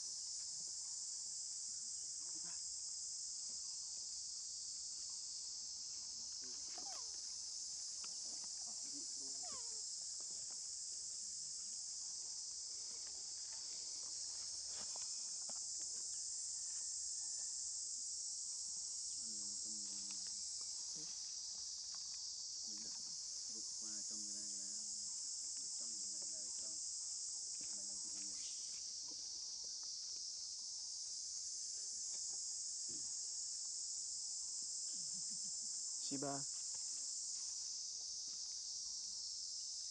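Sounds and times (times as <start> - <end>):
insects trilling: 0.0 - 39.9.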